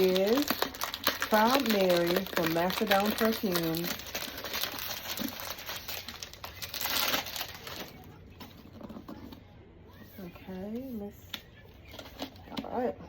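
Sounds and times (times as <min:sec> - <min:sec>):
packaging crinkling and rustling: 0:00.0 - 0:09.3, 0:11.8 - 0:12.6.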